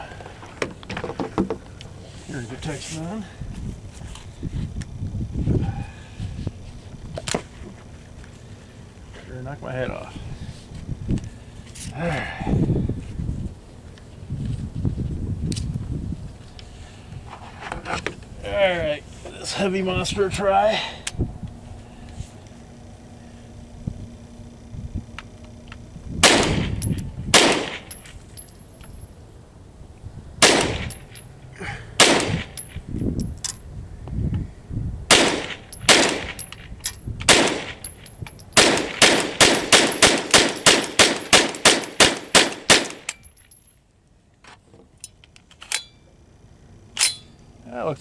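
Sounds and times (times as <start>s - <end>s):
rifle gunshots: 26.2s - 27.9s, 30.4s - 31.0s, 32.0s - 32.5s, 35.1s - 36.4s, 37.3s - 37.8s, 38.6s - 43.1s.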